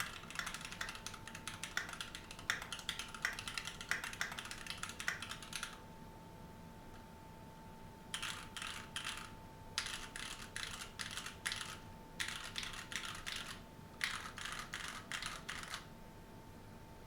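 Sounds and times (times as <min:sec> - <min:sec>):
mechanical keyboard typing: 0:00.0 - 0:05.8, 0:08.1 - 0:15.9.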